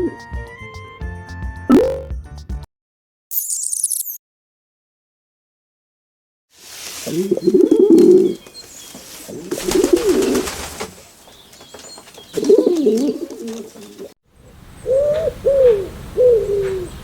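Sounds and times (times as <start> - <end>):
pigeon cooing: 7.0 - 8.5, 9.3 - 10.7, 12.3 - 17.0.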